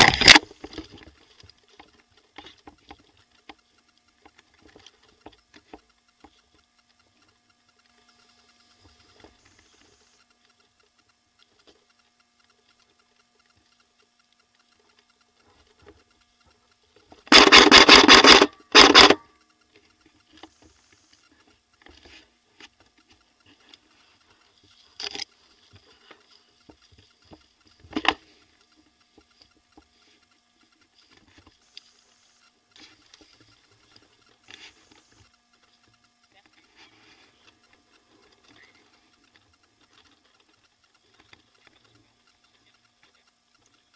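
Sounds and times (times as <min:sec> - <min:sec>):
airsoft gun bursts: 0:00.0 - 0:00.6, 0:17.2 - 0:19.3.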